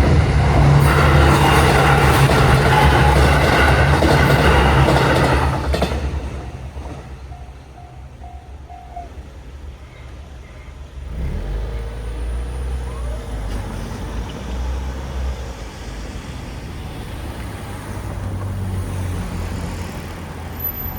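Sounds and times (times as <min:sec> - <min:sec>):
vehicle engine rumbling: 0:00.0 - 0:08.2
railroad crossing alarm bell: 0:00.0 - 0:09.7.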